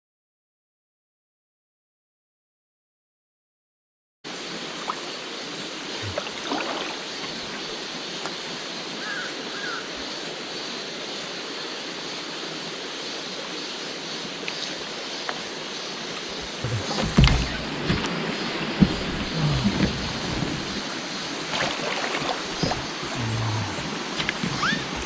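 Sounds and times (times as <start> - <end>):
stream water running: 4.3 - 25.0
faint bird chirps: 16.2 - 25.0.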